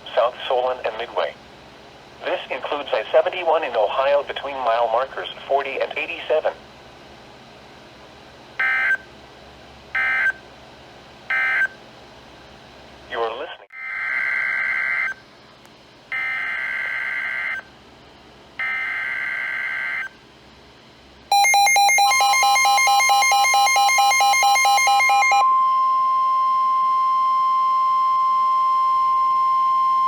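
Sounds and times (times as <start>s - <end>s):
steady alert tone: 21.3s - 26.0s.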